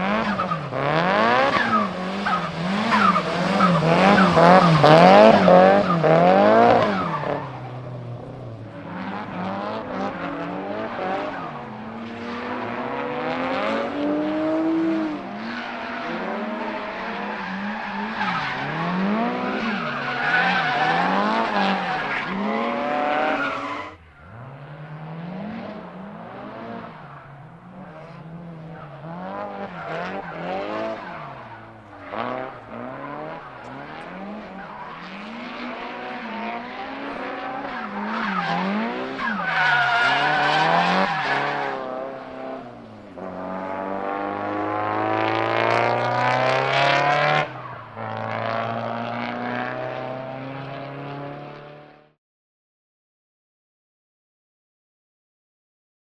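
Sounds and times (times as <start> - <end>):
car engine revving: 0.0 - 52.1
tyres sliding on wet tarmac: 0.1 - 24.9, 25.5 - 45.0.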